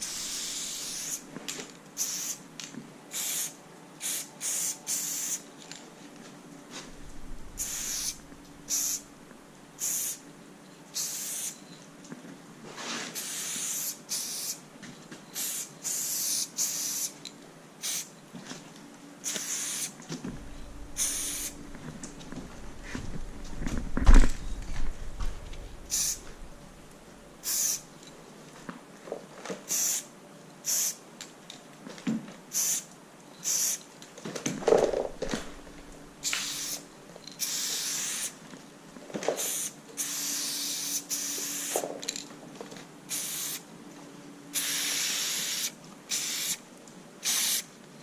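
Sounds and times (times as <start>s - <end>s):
spray paint can hissing: 0.0s - 1.2s, 2.0s - 2.4s, 3.1s - 5.4s, 7.5s - 9.1s, 9.8s - 10.2s, 10.9s - 11.6s, 13.1s - 14.6s, 15.4s - 17.2s, 17.8s - 18.1s, 19.2s - 19.9s, 20.8s - 21.6s, 25.9s - 26.3s, 27.4s - 27.8s, 29.7s - 30.0s, 30.6s - 31.0s, 32.5s - 32.8s, 33.4s - 33.8s, 36.2s - 36.8s, 37.4s - 38.4s, 39.4s - 41.8s, 43.1s - 43.6s, 44.5s - 46.6s, 47.2s - 47.7s.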